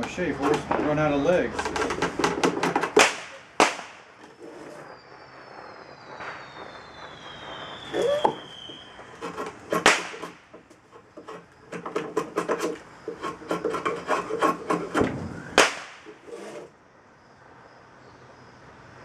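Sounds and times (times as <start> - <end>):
drawknife scraping wood: 0.0 - 1.0, 9.2 - 15.2, 15.9 - 16.7.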